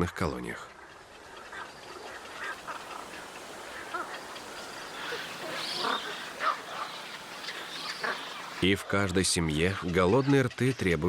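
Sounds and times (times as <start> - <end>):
waterbirds croaking and squawking: 1.5 - 8.7.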